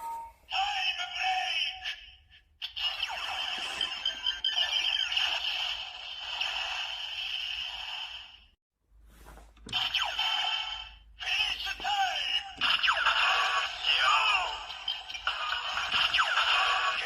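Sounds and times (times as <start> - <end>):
toy electronic sound effects: 2.7 - 8.4, 9.7 - 11.0, 12.2 - 17.0.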